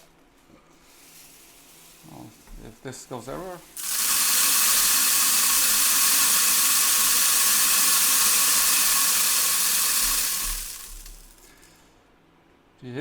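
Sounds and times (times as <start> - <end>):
granules pouring into plastic basket: 3.4 - 11.9.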